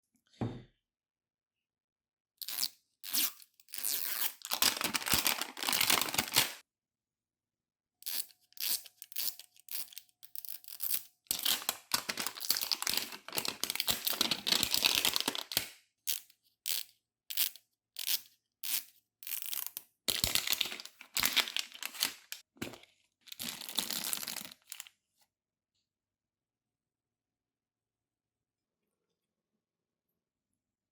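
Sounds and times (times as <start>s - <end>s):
packaging tearing and crinkling: 3.1s - 6.6s, 9.9s - 15.7s, 19.5s - 24.9s.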